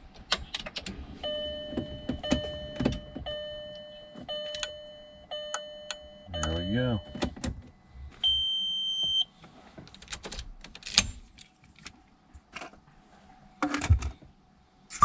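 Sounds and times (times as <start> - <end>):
high electronic beep: 5.3 - 7.2.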